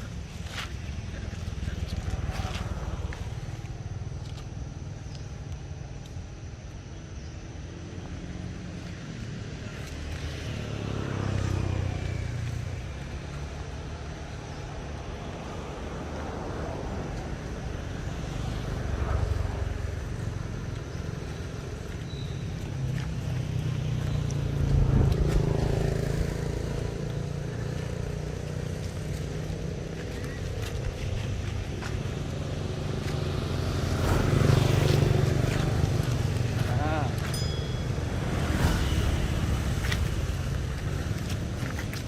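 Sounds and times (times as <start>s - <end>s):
low rumble: 24.0s - 27.1s.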